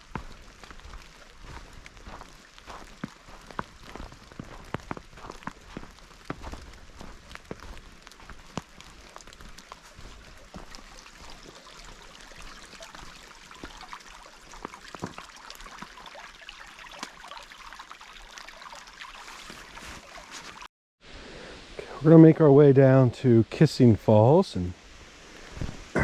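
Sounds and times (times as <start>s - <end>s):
creek water running: 0.0s - 26.0s
footsteps clicking: 0.2s - 10.8s.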